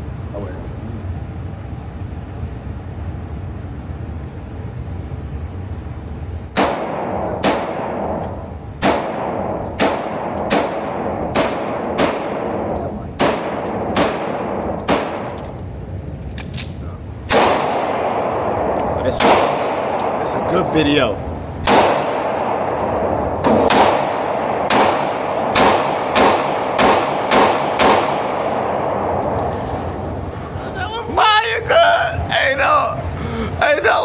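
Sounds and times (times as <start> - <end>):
gunshots echoing: 6.6 - 15.4, 17.3 - 29.4.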